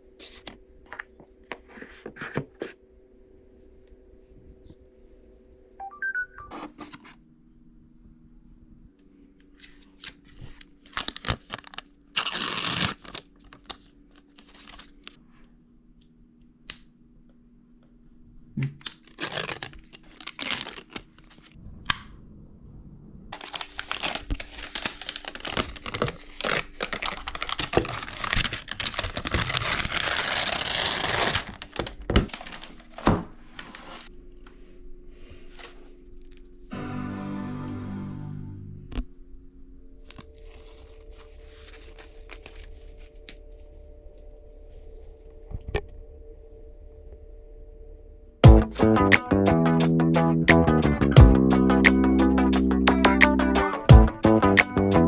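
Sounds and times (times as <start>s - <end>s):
paper and plastic rustling: 0.1s - 2.8s, 9.5s - 15.2s, 18.8s - 21.6s, 23.4s - 36.5s, 40.1s - 45.2s
packaging tearing and crinkling: 9.6s - 15.2s, 18.8s - 21.6s, 23.4s - 34.1s, 40.2s - 43.4s.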